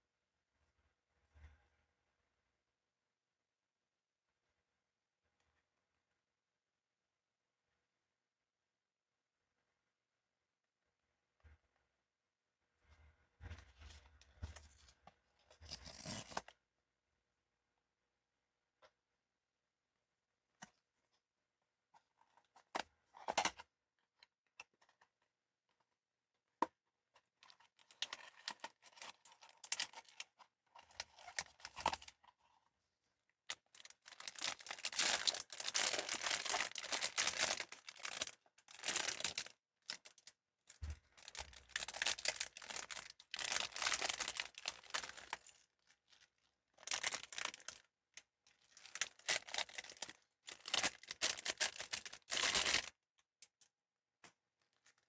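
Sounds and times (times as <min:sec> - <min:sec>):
wrapping torn and crinkled: 0:33.6 - 0:40.3, 0:41.1 - 0:45.5, 0:46.8 - 0:47.9, 0:48.6 - 0:52.9.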